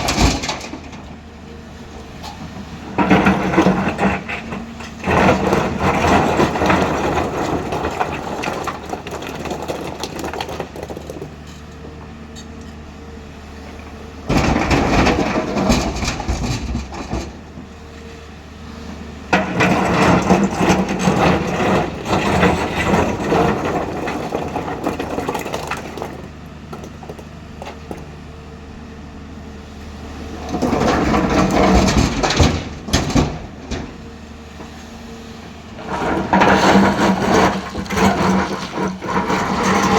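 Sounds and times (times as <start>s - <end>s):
boulders crashing into steel truck: 0.0s - 1.4s, 2.4s - 11.4s, 14.2s - 17.8s, 19.3s - 28.1s, 30.3s - 34.8s, 35.7s - 39.9s
diesel engine running: 0.0s - 39.9s.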